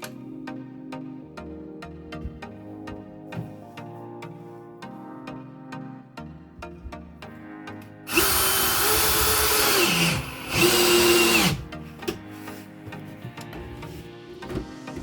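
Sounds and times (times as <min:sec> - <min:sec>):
background music: 0:00.0 - 0:15.0
power drill motor whine: 0:08.1 - 0:11.7.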